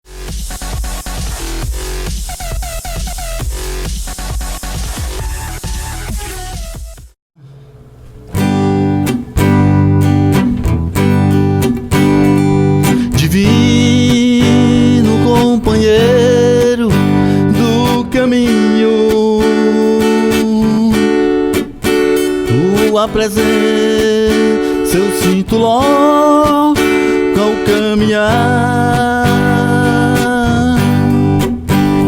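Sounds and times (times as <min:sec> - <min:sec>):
acoustic guitar strumming: 0:07.4 - 0:32.0.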